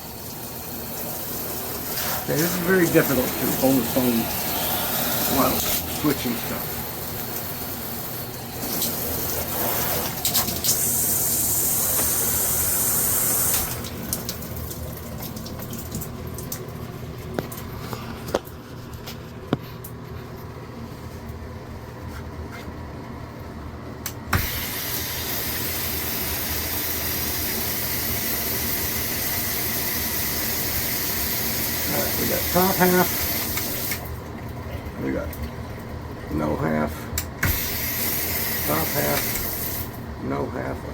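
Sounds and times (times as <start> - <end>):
shower water spraying: 0.1 - 16.1, 24.4 - 34.1, 37.4 - 40.0.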